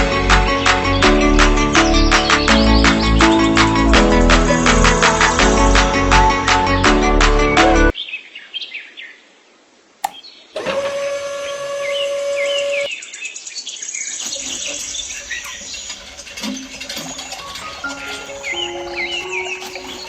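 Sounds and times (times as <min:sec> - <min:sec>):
click: 0:10.0 - 0:10.2
small birds chirping: 0:10.0 - 0:10.6, 0:12.4 - 0:20.0.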